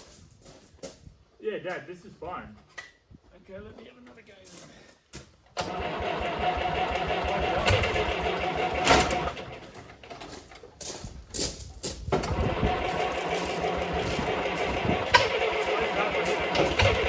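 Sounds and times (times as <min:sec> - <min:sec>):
tractor starter motor cranking: 0:05.5 - 0:11.0, 0:12.1 - 0:17.0.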